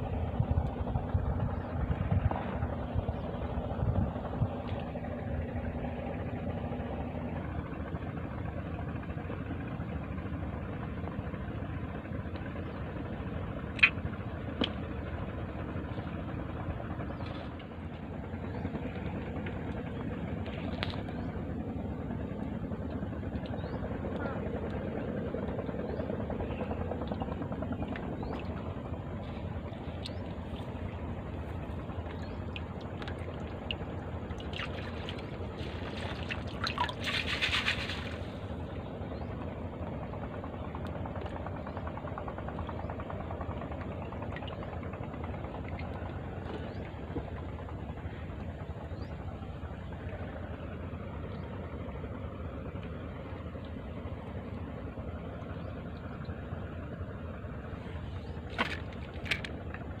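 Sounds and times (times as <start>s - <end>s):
steady low rumble: 0.0s - 60.0s
water splashing and dripping: 32.1s - 38.1s.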